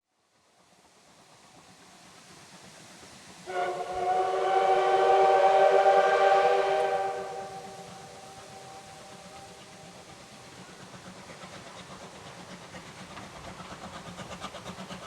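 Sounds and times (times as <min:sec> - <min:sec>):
steam whistle blast: 0:03.5 - 0:09.2.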